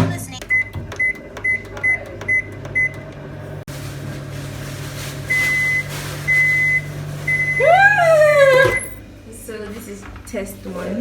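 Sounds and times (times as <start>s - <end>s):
microwave humming: 0.0s - 11.0s
microwave keypad beep: 0.5s - 3.0s, 5.3s - 7.7s
microwave long beeps: 0.5s - 3.0s, 5.2s - 9.0s.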